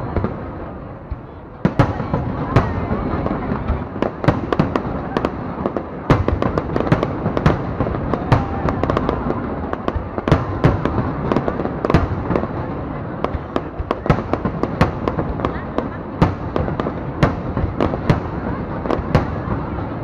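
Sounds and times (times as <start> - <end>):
firework bangs and crackles: 0.0 - 20.0
rumble of distant fireworks: 0.0 - 20.0.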